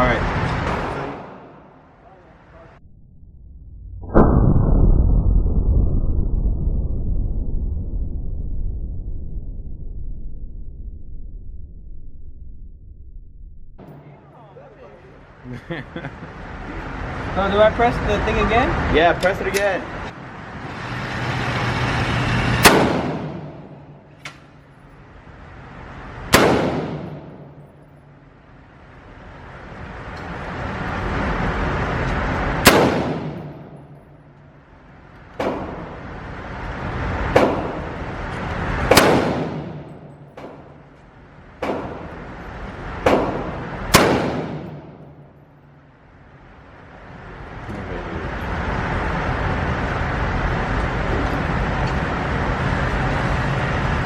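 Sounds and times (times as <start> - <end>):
rushing noise: 19.8 - 54.0
gunshots: 22.6 - 23.9, 26.3 - 27.7, 32.6 - 33.8, 38.9 - 40.7, 43.0 - 45.2.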